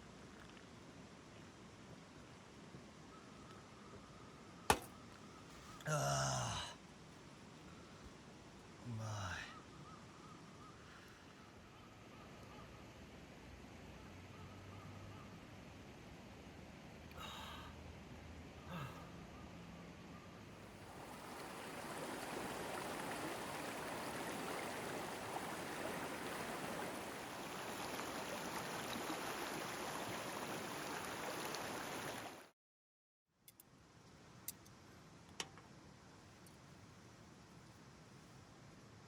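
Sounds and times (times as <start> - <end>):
stream water rushing: 20.8 - 32.5.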